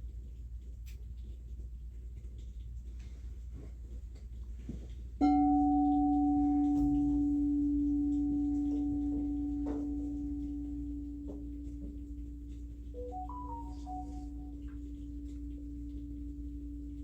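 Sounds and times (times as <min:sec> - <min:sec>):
singing bowl ringing: 0:05.2 - 0:11.4, 0:13.0 - 0:14.7.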